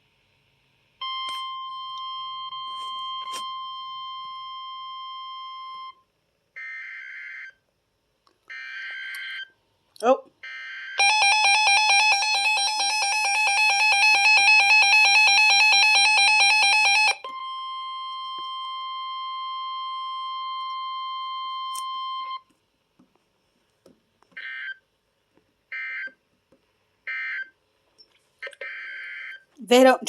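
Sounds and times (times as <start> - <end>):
warbling electronic alarm: 10.5 - 22.4
steady warning tone: 11.0 - 22.4.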